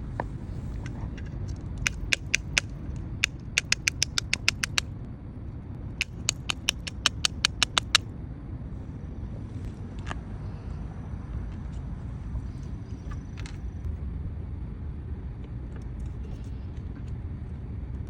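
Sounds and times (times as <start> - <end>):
cap ratchet clicking: 1.9 - 4.8, 6.0 - 8.0
low rumble: 13.6 - 18.0.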